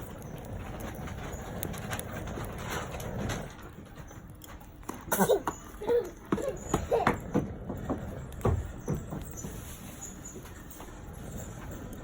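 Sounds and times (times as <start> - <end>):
campfire crackling and popping: 0.0 - 12.0.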